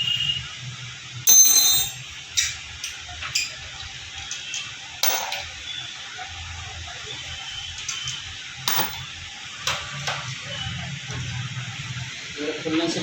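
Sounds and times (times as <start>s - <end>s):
metal tools clinking on metal: 1.3s - 2.6s, 4.5s - 5.5s, 7.9s - 9.0s.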